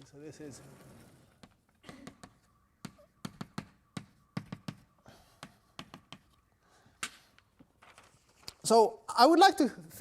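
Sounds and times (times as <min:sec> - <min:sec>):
chalk tapping on blackboard: 0:02.2 - 0:06.4.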